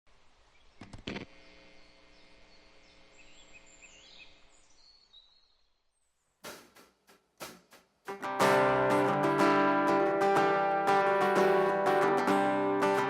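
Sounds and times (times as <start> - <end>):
faint bird chirps: 0.4 - 6.4
acoustic guitar strum: 6.5 - 13.0.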